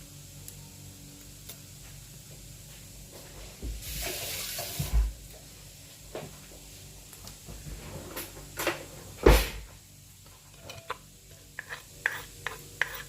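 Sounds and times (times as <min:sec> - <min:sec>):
salad rustling and scraping: 0:10.2 - 0:13.0.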